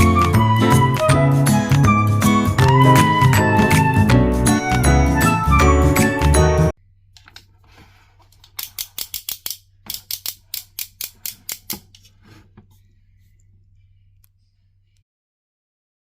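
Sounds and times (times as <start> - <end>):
low steady hum: 6.7 - 8.6, 11.8 - 15.0.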